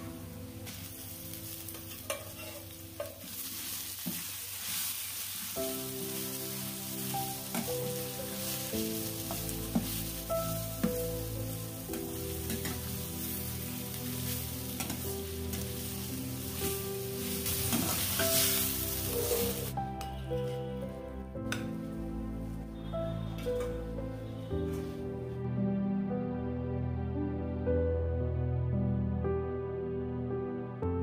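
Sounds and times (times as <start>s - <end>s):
food sizzling in a pan: 0.0s - 20.6s.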